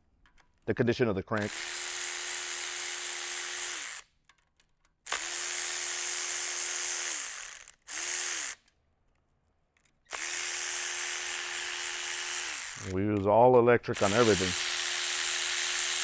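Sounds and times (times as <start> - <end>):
faint metal clicks: 0.0 - 0.7, 4.2 - 5.0, 8.6 - 10.1
electric ratchet spinning: 1.4 - 4.1, 5.1 - 8.7, 10.1 - 13.2, 13.9 - 16.0.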